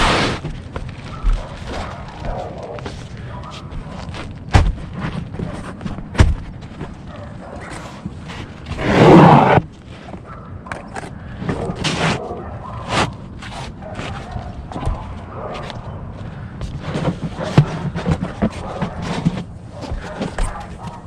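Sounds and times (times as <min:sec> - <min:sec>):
rough scraping noise: 0:00.0 - 0:00.5, 0:07.7 - 0:10.1, 0:11.4 - 0:13.8
sharp knocks on tile roof: 0:04.5 - 0:05.1, 0:05.8 - 0:06.5.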